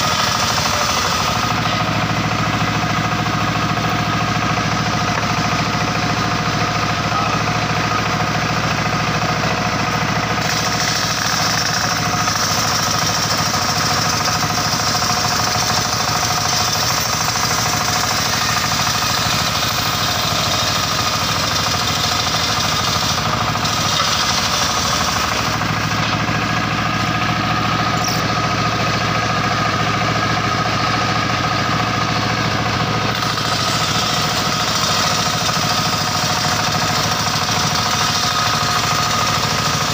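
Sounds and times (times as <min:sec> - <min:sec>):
saw blade cutting wood: 0:00.0 - 0:04.0, 0:09.5 - 0:29.1, 0:33.1 - 0:39.9
sawmill machine droning: 0:00.0 - 0:39.9.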